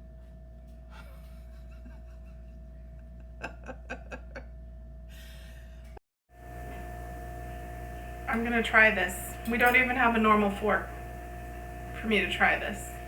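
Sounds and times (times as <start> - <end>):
electrical room hum: 0.0 - 13.0
soft chuckle: 0.9 - 4.6.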